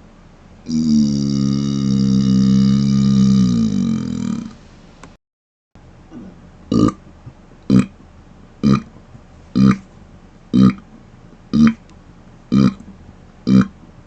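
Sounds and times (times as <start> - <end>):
man burping: 0.7 - 4.6, 6.1 - 7.0, 7.7 - 7.9, 8.6 - 8.9, 9.6 - 9.8, 10.6 - 10.8, 11.5 - 11.8, 12.5 - 12.8, 13.5 - 13.7.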